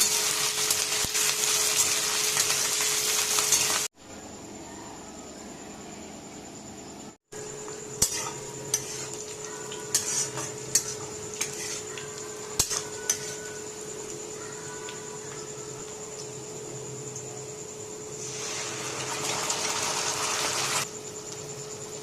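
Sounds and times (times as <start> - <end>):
metal spoon scraping in a pan: 0.0 - 3.9, 8.0 - 13.8.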